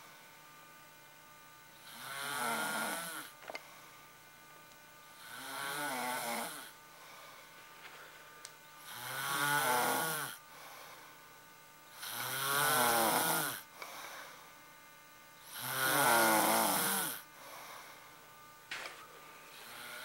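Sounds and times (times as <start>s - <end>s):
person snoring loudly: 1.8s - 3.3s, 5.2s - 6.8s, 8.8s - 10.4s, 11.9s - 13.7s, 15.4s - 17.7s, 19.6s - 20.0s
quiet breathing: 3.5s - 4.2s, 6.9s - 8.4s, 10.4s - 11.4s, 13.7s - 14.6s, 17.2s - 18.3s, 19.4s - 20.0s.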